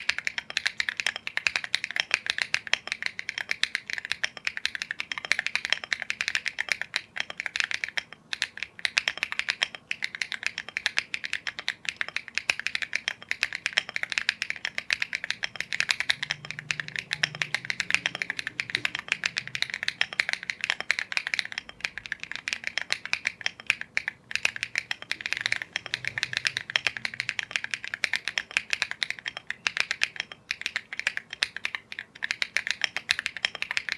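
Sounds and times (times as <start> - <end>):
fast mechanical keyboard typing: 0.0 - 33.9.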